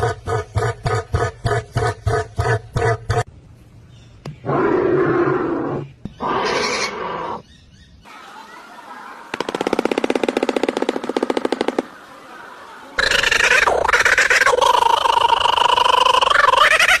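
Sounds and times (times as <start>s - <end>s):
harsh roar-like bird calls: 4.1s - 9.3s, 11.8s - 17.0s.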